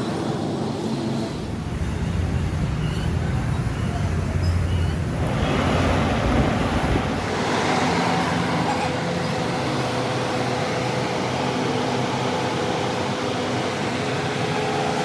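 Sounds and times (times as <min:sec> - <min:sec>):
noisy rush: 0:00.6 - 0:15.0
low machine hum: 0:01.3 - 0:07.4.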